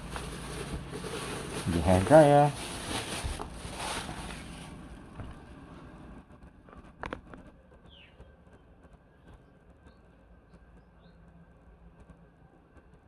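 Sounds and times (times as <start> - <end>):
packaging rustling: 0.0 - 5.0.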